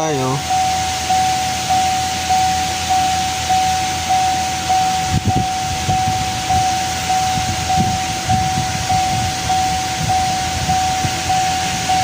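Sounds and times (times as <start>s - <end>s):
car warning chime: 0.0s - 12.0s
steady hiss: 0.0s - 12.0s.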